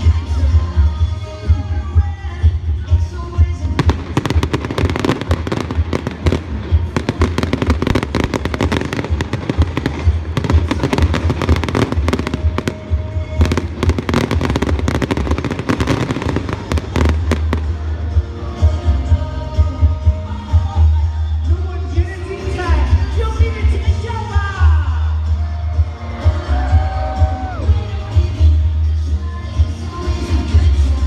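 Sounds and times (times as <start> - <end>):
music: 0.0 - 31.0
fireworks bangs and crackles: 3.4 - 18.7.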